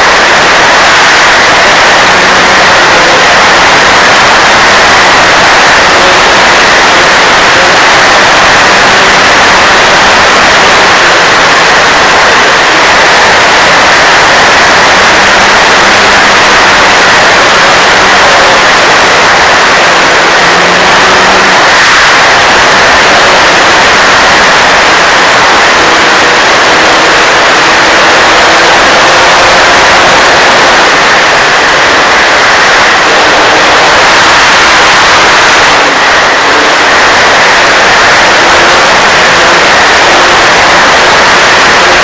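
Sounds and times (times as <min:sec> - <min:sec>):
faint model plane motor: 0:00.0 - 0:42.0
loud steady hiss: 0:00.0 - 0:42.0.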